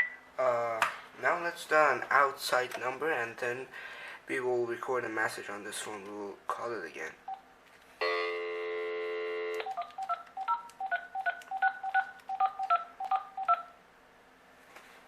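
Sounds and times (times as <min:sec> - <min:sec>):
phone dial tone: 0:08.0 - 0:13.7
keypad dialing tones: 0:09.4 - 0:13.7.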